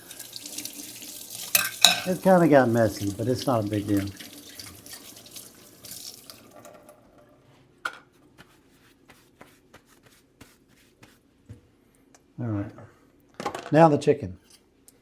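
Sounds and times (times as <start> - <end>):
tap water running into sink: 0.0 - 6.9.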